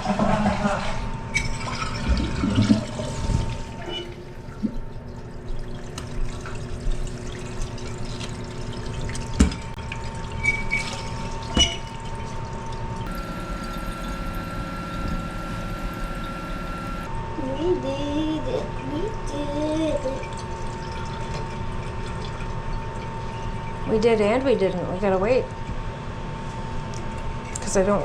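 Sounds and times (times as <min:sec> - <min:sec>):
toilet tank refilling hiss: 0:13.1 - 0:17.1.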